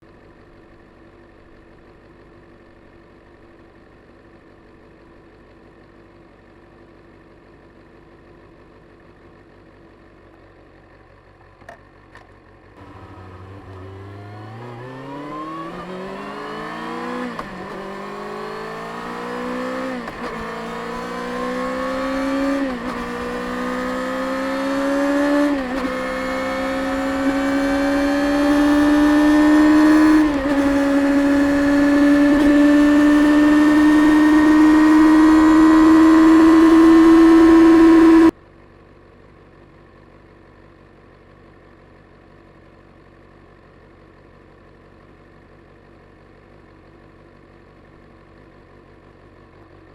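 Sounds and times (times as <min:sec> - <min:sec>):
motorcycle engine accelerating: 0:11.3 - 0:41.6.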